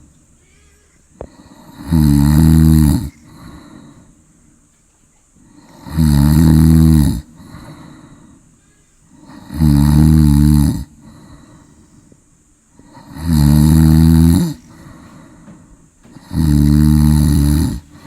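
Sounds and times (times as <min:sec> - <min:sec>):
soft breathing: 0:00.0 - 0:01.9, 0:03.0 - 0:05.9, 0:07.2 - 0:09.5, 0:10.8 - 0:13.2, 0:14.4 - 0:18.0
loud snoring: 0:01.2 - 0:03.9, 0:05.5 - 0:07.8, 0:09.2 - 0:11.3, 0:12.8 - 0:15.0, 0:16.1 - 0:18.0.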